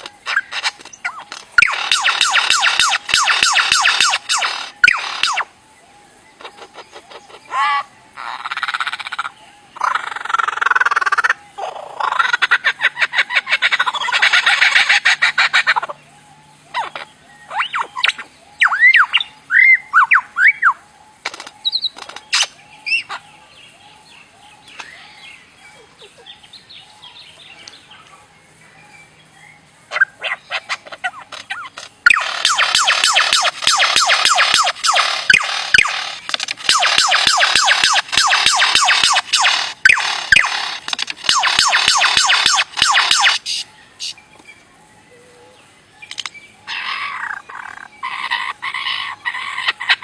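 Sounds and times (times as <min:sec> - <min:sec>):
soft bird chatter: 0:00.0 - 0:50.0
bird whistling: 0:00.3 - 0:05.5, 0:16.8 - 0:20.8, 0:32.0 - 0:44.2
bird squawking harshly: 0:01.6 - 0:05.4, 0:30.3 - 0:44.1
bird clicking: 0:31.4 - 0:43.6.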